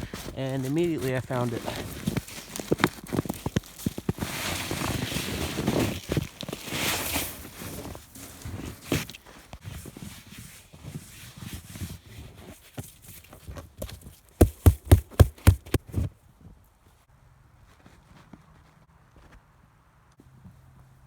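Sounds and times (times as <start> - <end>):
footsteps crunching in snow: 0.0 - 16.1.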